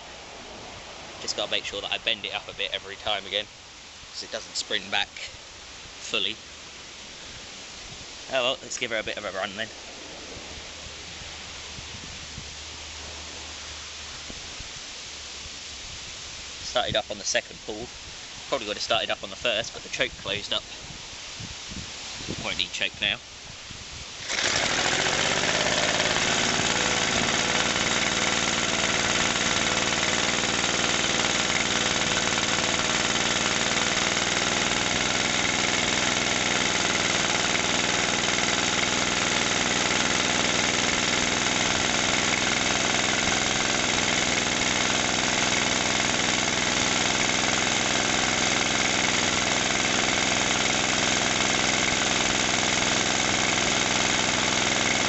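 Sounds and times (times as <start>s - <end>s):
small engine running: 24.2s - 55.0s.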